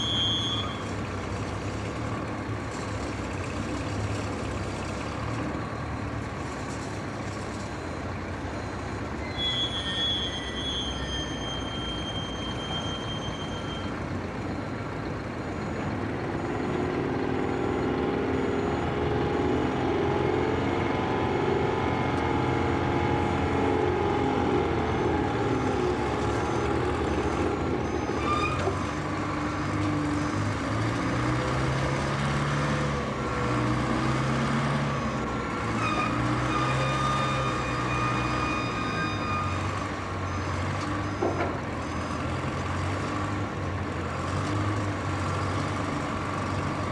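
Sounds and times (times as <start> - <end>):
heavy construction machinery running: 0.0 - 46.9
whining engine: 0.0 - 46.9.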